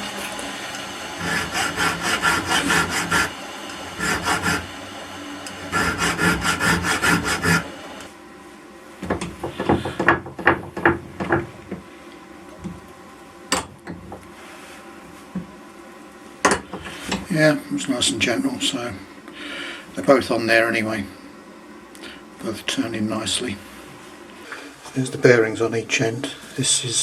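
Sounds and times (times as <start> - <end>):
file rasping on steel: 1.2 - 3.4, 4.0 - 4.7, 5.7 - 7.7.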